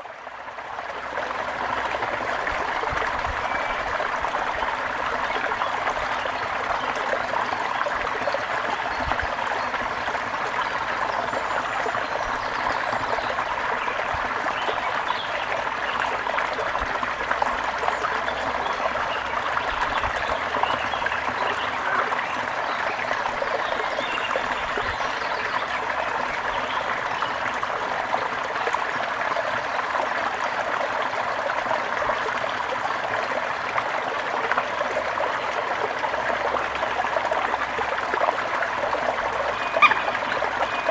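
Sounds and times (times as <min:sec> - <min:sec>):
brook babbling over stones: 0:00.0 - 0:40.9
faint high bird chirps: 0:39.6 - 0:40.1.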